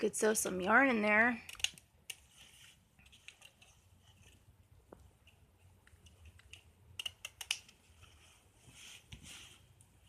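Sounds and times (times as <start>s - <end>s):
sharp plastic clicks: 1.4s - 2.2s, 4.9s - 7.8s.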